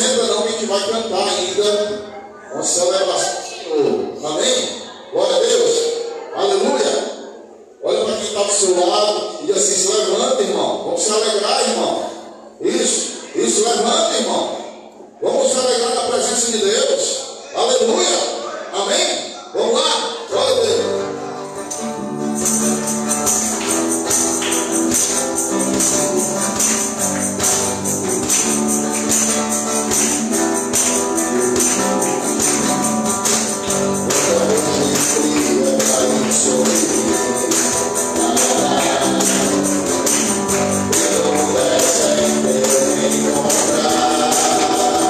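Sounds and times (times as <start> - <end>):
live gospel band playing: 0.0 - 1.8, 20.1 - 45.0
tambourine: 22.0 - 45.0
people singing: 23.2 - 45.0.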